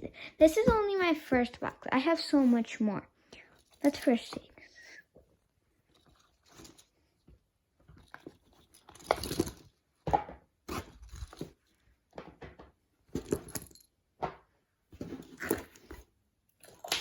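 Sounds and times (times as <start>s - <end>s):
plastic toys rustling and clattering: 3.4s - 4.6s, 5.3s - 13.9s, 14.9s - 17.0s.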